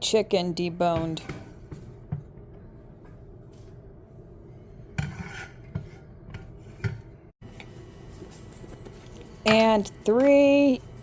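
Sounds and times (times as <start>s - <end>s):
utensils knocking and scraping pot: 0.8s - 3.2s, 4.9s - 7.2s, 8.8s - 11.0s.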